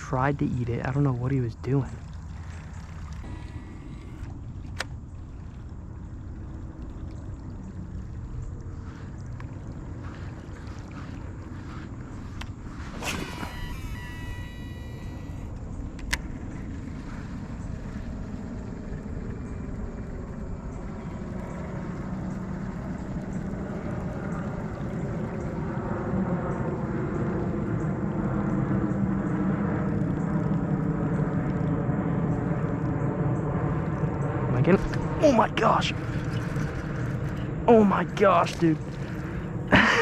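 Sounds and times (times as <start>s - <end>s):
motor engine running: 9.8s - 24.6s.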